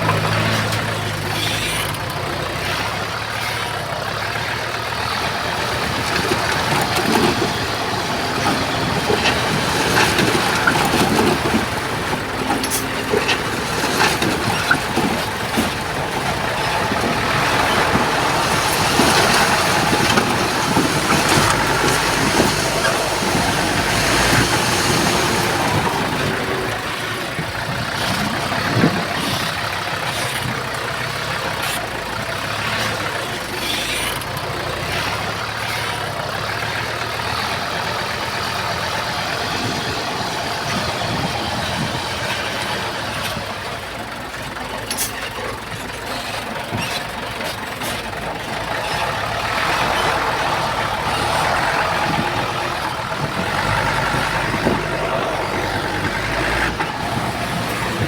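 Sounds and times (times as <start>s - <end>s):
heavy diesel machinery running: 0.0s - 58.0s.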